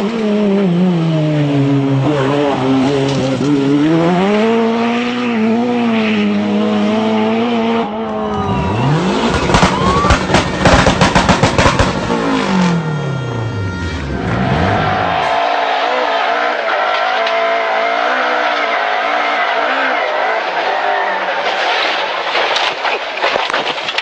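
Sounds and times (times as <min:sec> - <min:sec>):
rally car engine revving: 0:00.0 - 0:22.2
sharp cracks: 0:21.4 - 0:24.0.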